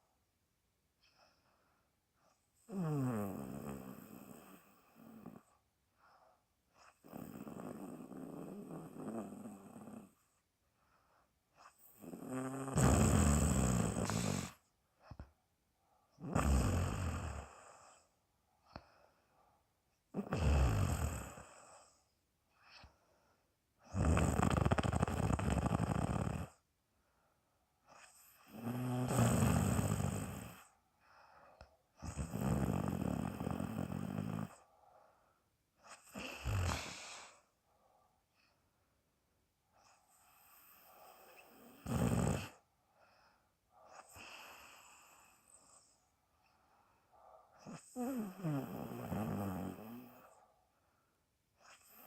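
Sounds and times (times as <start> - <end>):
woman snoring: 2.7 - 5.5, 6.8 - 10.2, 11.6 - 14.6, 16.2 - 18.0, 20.1 - 21.9, 23.9 - 26.6, 28.0 - 30.7, 32.0 - 34.6, 35.9 - 37.4, 40.2 - 42.6, 47.6 - 50.4.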